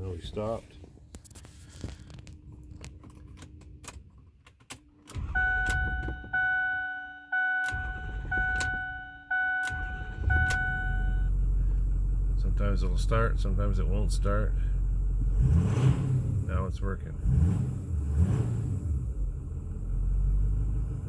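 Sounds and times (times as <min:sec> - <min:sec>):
diesel engine cranking and idling: 0:01.7 - 0:21.0
truck warning chime dinging: 0:05.1 - 0:11.3.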